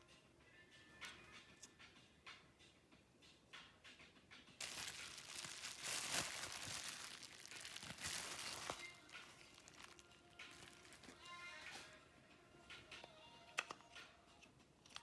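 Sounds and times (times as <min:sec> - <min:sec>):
material crinkling and rustling: 0:04.6 - 0:11.9.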